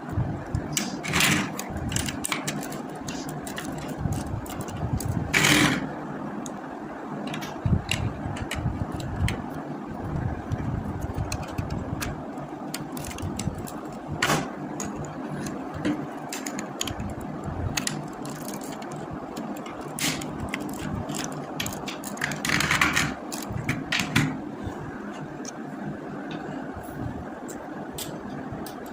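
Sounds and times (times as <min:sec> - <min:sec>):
steady low hum: 0:00.0 - 0:28.9
plastic bricks clicking and rattling: 0:00.8 - 0:05.9, 0:14.8 - 0:24.1.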